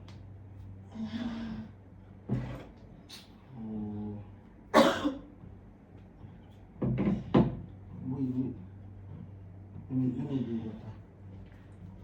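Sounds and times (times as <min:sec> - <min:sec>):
woman coughing harshly: 0:04.7 - 0:05.3.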